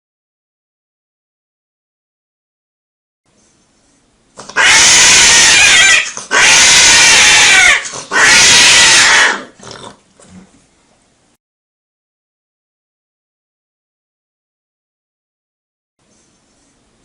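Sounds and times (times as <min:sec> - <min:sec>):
cat yowling in pain: 0:04.5 - 0:09.6.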